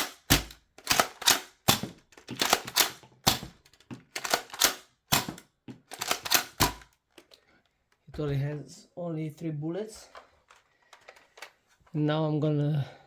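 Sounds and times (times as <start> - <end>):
toy blaster clacks and shots: 0.0 - 3.5, 4.1 - 6.9.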